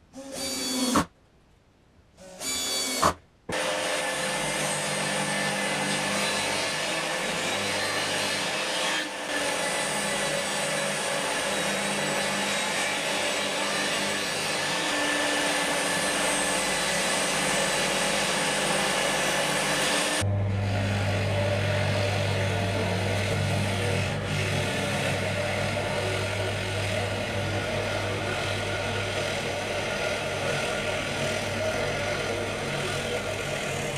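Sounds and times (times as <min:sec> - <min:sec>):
disc sander motor hum: 0:16.0 - 0:33.9
wood rasping on sanding disc: 0:20.8 - 0:33.9.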